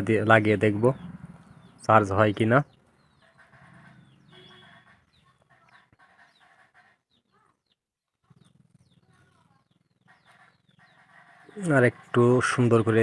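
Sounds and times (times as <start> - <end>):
chickens clucking: 0.0 - 7.3, 9.9 - 13.0.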